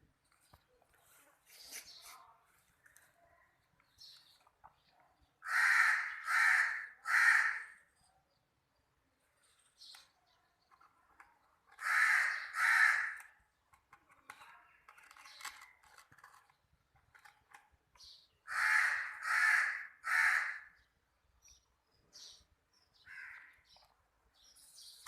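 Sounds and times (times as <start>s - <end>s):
crow cawing: 5.4s - 7.8s, 11.8s - 13.4s, 18.5s - 20.8s, 23.1s - 23.6s.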